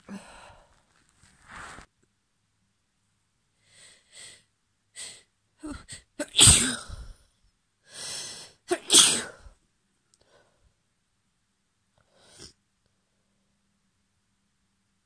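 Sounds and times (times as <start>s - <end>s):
woman sneezing: 5.7s - 7.1s, 8.7s - 9.5s.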